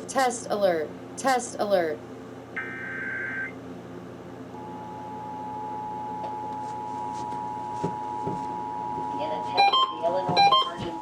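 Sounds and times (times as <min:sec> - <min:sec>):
two-tone attention signal: 0:02.6 - 0:03.6
warbling digital data tone: 0:02.6 - 0:03.6.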